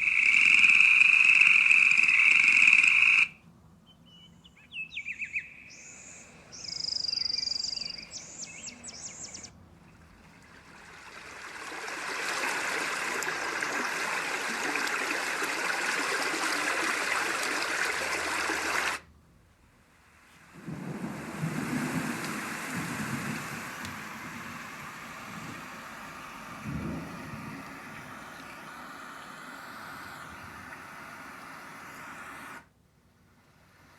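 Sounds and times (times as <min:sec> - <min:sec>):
recorded birdsong: 0:00.0 - 0:11.4, 0:22.6 - 0:32.6
running stream: 0:05.5 - 0:19.1, 0:20.0 - 0:32.7
low rumbling: 0:20.5 - 0:32.4.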